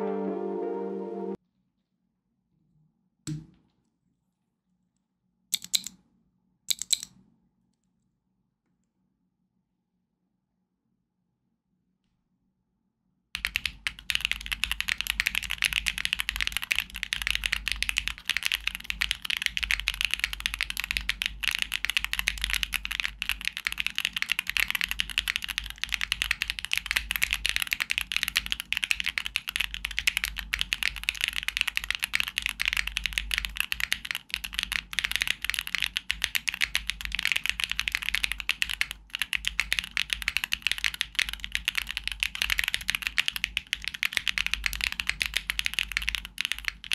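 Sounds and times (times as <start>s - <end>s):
fast mechanical keyboard typing: 5.6s - 5.9s, 6.7s - 7.1s, 13.4s - 46.9s.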